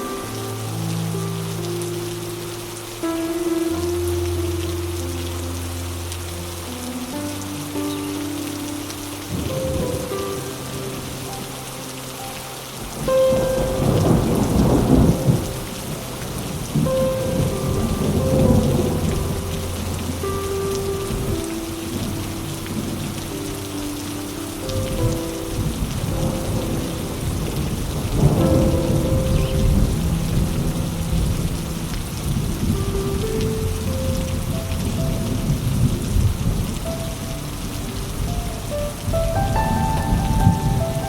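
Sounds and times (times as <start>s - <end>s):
rain falling: 0.0s - 41.0s
soft music with held notes: 0.0s - 41.0s
thunder rolling: 12.8s - 23.6s, 24.6s - 41.0s.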